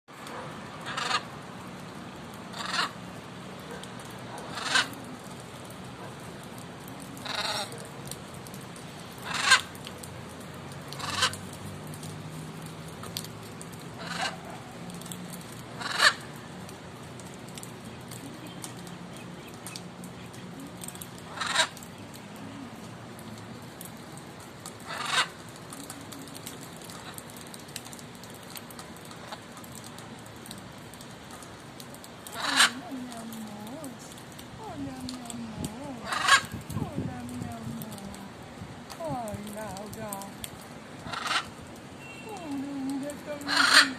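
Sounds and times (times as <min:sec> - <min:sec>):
macaws squawking: 0:00.8 - 0:01.3, 0:02.5 - 0:03.0, 0:04.4 - 0:05.0, 0:09.2 - 0:09.7, 0:10.9 - 0:11.4, 0:14.0 - 0:14.5, 0:15.8 - 0:16.2, 0:21.3 - 0:21.9, 0:24.9 - 0:25.4, 0:32.3 - 0:32.9, 0:36.0 - 0:36.6, 0:41.0 - 0:41.6, 0:43.4 - 0:43.9.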